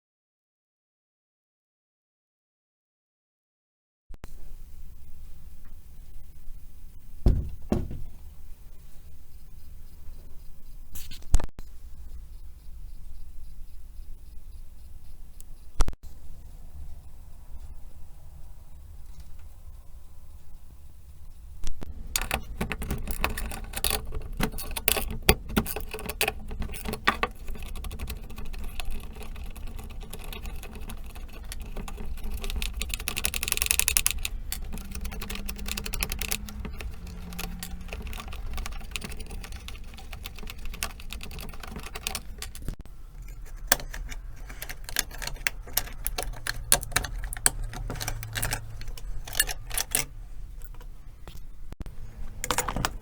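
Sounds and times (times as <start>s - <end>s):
metal parts and tools clattering: 7.2s - 8.4s, 22.0s - 53.0s.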